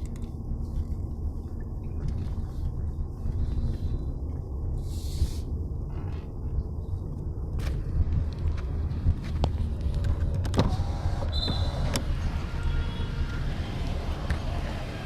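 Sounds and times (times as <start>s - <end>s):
car driving slowly rumble: 0.0s - 10.9s.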